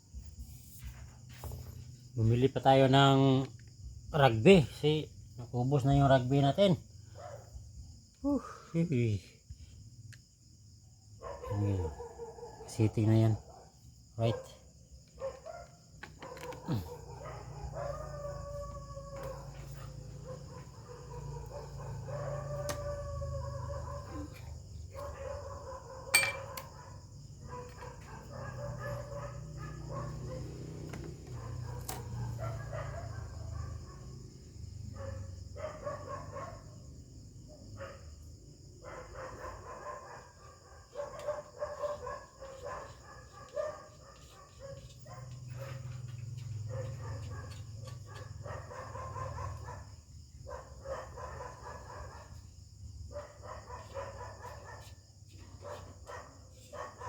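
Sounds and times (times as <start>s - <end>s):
insect drone: 0.0s - 57.0s
dog whining and howling: 16.4s - 24.3s.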